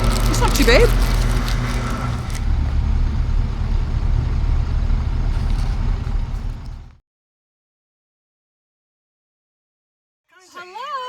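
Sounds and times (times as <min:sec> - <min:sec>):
engine and road rumble: 0:00.0 - 0:07.0.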